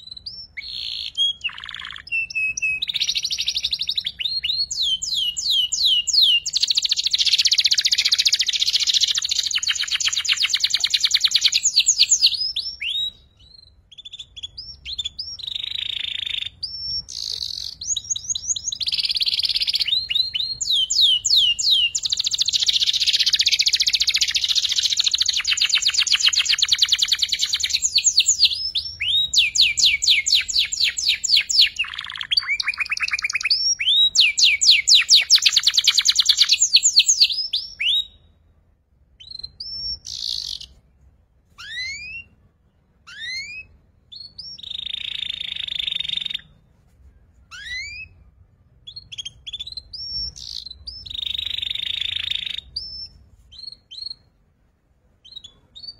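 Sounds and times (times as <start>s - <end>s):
canary singing trills: 0.0s - 38.3s, 39.2s - 40.8s, 41.6s - 46.6s, 47.5s - 54.4s, 55.2s - 55.9s.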